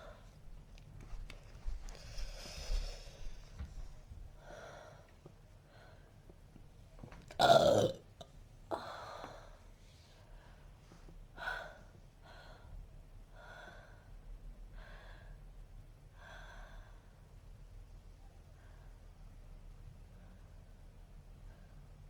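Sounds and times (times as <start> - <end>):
person breathing: 1.7 - 5.1.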